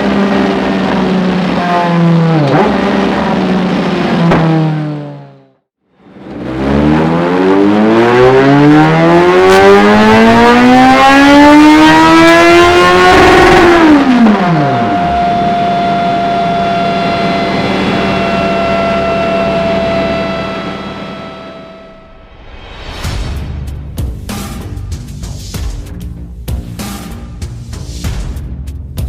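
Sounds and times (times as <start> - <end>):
motorcycle engine revving: 0.0 - 22.4.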